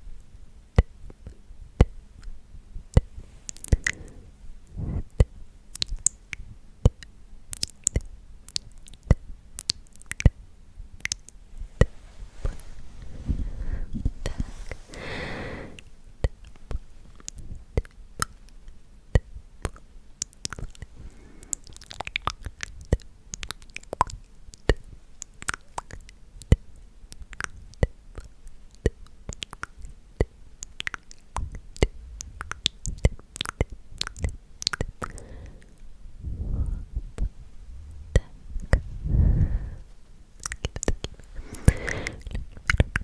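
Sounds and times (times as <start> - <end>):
wet mouth clicks and pops: 0.8 - 2.3, 2.9 - 4.2, 4.8 - 10.4, 11.0 - 12.6, 15.8 - 35.9, 38.1 - 38.9, 40.4 - 43.0
breathy puff: 3.7 - 5.1, 12.2 - 15.9, 21.0 - 21.6, 35.1 - 36.9, 39.0 - 40.0, 41.3 - 42.3.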